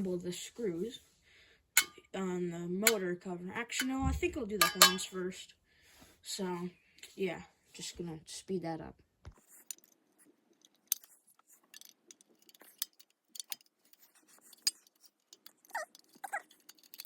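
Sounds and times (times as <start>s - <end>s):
screws clinking on metal: 1.8s - 2.0s, 4.6s - 5.1s, 10.6s - 17.0s.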